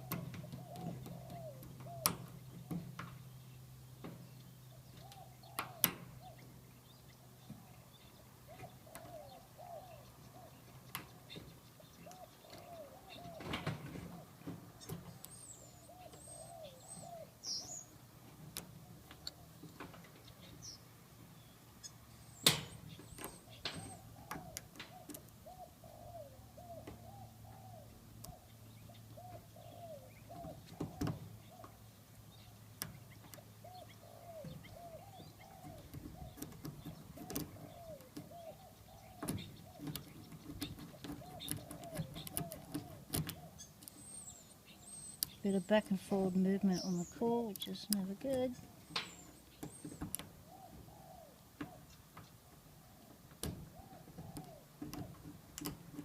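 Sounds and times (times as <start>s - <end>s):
bird calling: 0.0s - 19.6s, 20.2s - 56.0s.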